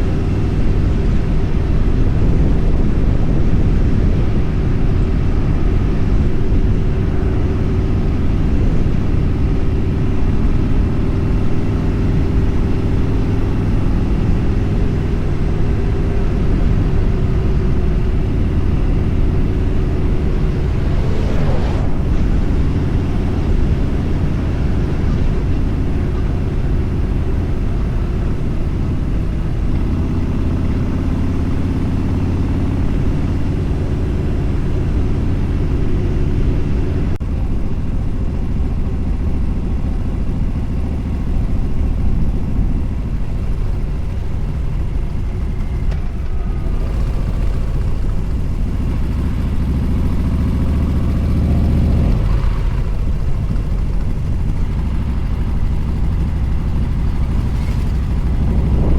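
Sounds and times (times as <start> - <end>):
motorcycle running: 0.0 - 58.9
wind rush on microphone: 0.0 - 58.9
brief whoosh: 18.7 - 24.8.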